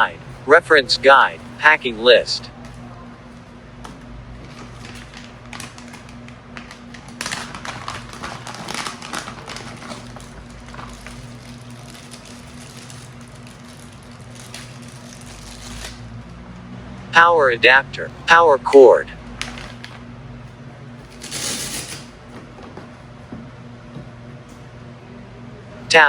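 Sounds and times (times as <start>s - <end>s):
packaging clicks and rustles: 0.0s - 16.4s, 19.2s - 23.0s.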